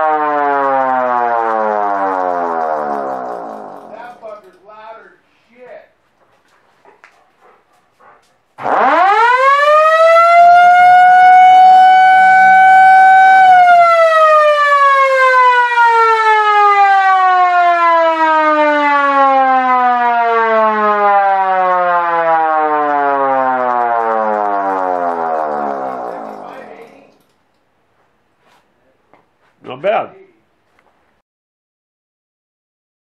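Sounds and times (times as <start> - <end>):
air raid siren wailing: 0.0 - 4.8, 7.4 - 27.2
low hum: 1.7 - 4.6.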